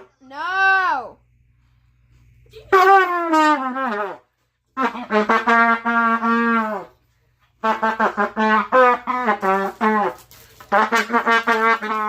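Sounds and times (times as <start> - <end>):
trumpet notes: 2.7 - 7.0, 7.6 - 12.0.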